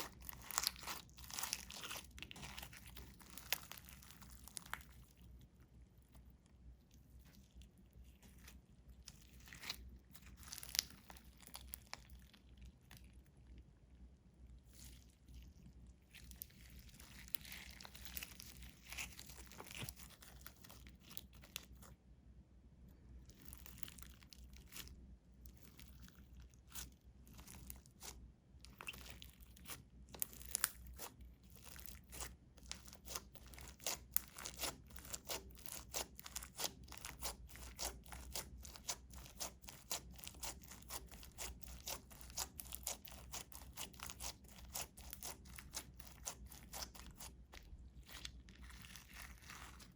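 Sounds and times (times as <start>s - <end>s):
slime crackling and popping: 0.0s - 5.2s, 8.3s - 12.8s, 16.1s - 21.9s, 25.5s - 49.9s.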